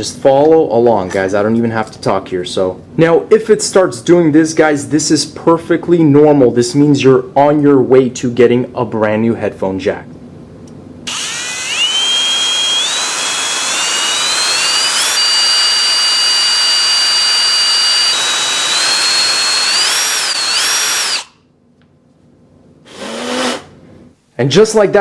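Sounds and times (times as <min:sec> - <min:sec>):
electric drill whine: 0:11.1 - 0:21.4, 0:22.9 - 0:23.7.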